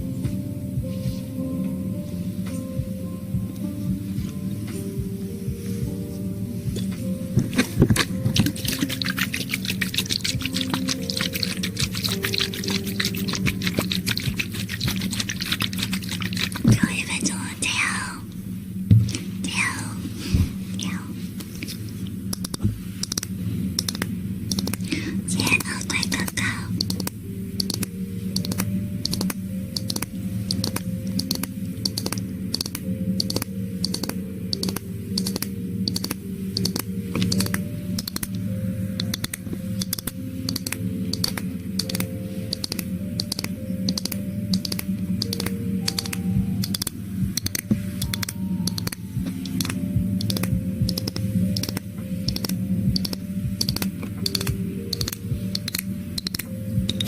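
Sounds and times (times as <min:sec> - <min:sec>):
soft background music: 0:00.0 - 0:57.0
sharp clicks: 0:22.3 - 0:24.9, 0:25.6 - 0:38.4, 0:39.0 - 0:57.0.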